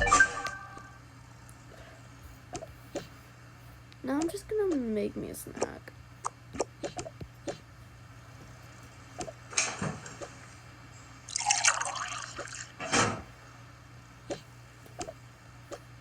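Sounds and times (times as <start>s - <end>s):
liquid pouring: 11.3s - 12.8s.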